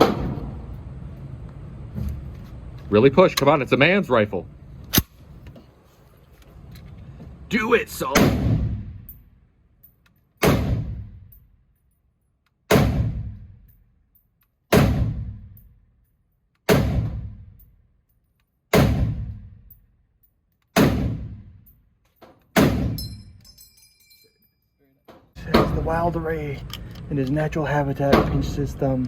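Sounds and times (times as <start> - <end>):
rifle shots echoing: 10.4 - 11.1.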